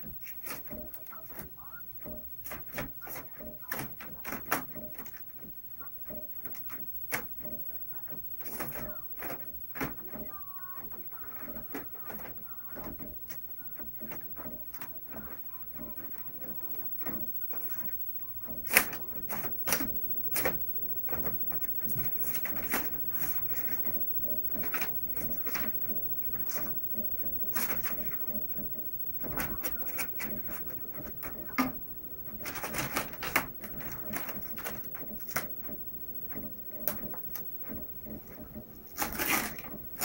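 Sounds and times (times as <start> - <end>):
plastic printer parts knocking: 0.0 - 40.0.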